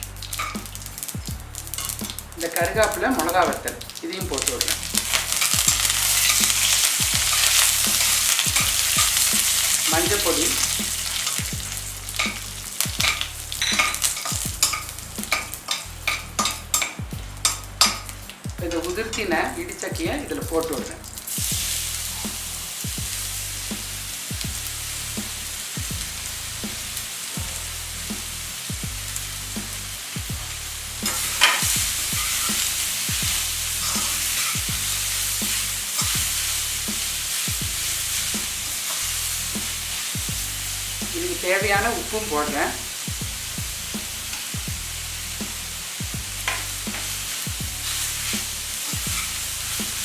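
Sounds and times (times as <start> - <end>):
spices sizzling in hot oil: 0.0 - 50.0
spoon scraping a pan: 0.2 - 2.4, 3.0 - 18.2, 30.4 - 40.2, 46.4 - 50.0.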